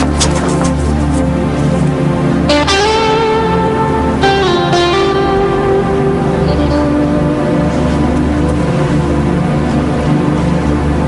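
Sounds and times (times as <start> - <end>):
score with held tones and deep bass: 2.2 - 11.0.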